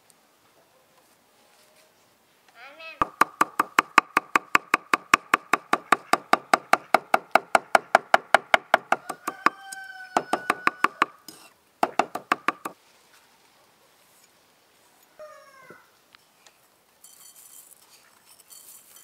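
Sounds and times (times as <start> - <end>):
rapid ringing knocks: 3.0 - 9.2, 11.8 - 12.8.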